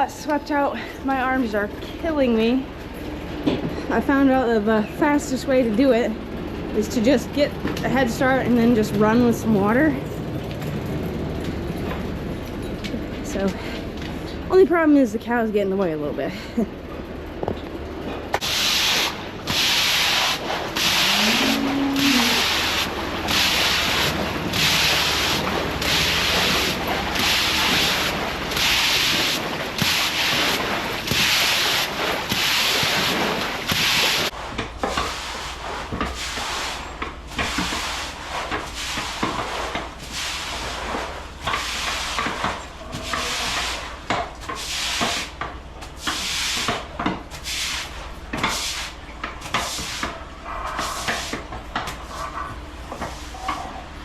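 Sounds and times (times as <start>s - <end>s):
steady low hum: 0.0s - 54.0s
broom sweeping water: 18.4s - 53.8s.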